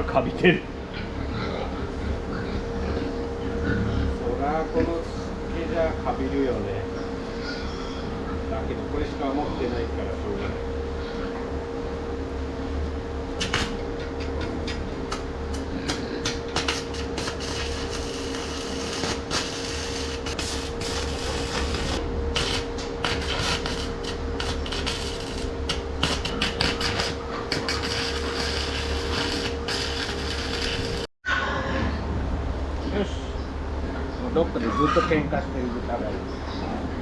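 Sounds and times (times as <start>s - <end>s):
steady hum: 0.0s - 37.0s
welding arc crackling: 13.4s - 13.8s, 15.1s - 31.1s.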